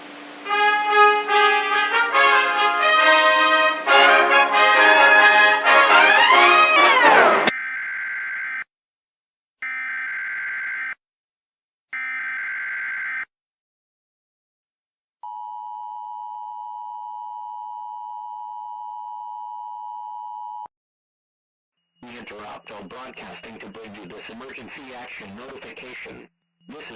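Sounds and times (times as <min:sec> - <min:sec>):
brass fanfare: 0:00.0 - 0:07.5
steady attention tone: 0:21.8 - 0:26.9
rapid digital data tones: 0:22.0 - 0:26.9.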